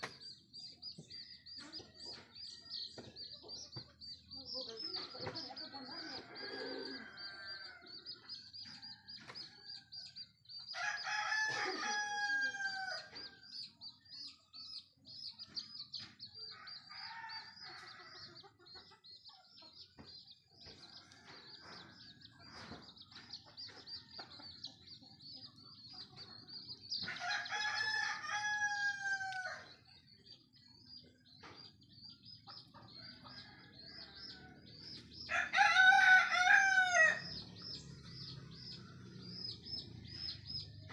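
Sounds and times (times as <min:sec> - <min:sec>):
rooster crowing: 0:10.8 - 0:13.1, 0:27.1 - 0:29.6, 0:35.3 - 0:37.4.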